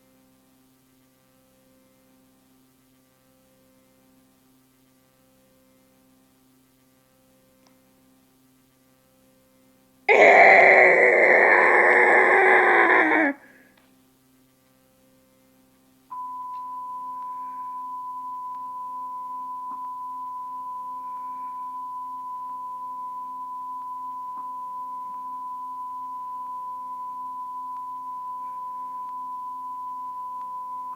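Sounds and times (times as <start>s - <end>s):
high sine-wave test tone: 16.1s - 30.9s.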